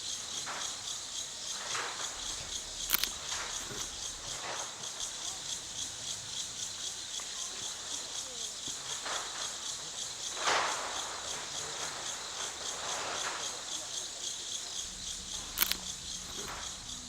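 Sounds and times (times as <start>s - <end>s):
insects chirring: 0.0s - 17.0s
brief rustle: 1.6s - 5.5s, 10.3s - 17.0s
sharp click: 2.8s - 3.9s, 15.5s - 16.6s.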